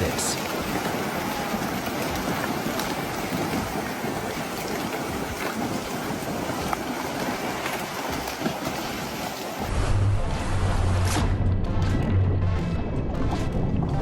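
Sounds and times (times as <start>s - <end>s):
small splashes: 0.0s - 9.7s
wind buffeting microphone: 0.0s - 9.7s
rushing water: 0.0s - 14.0s.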